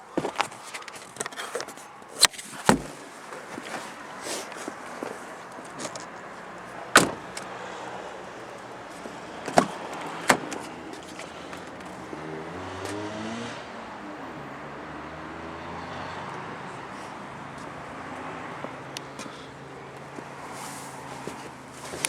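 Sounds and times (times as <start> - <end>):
car doors clunking shut: 2.2 - 14.0.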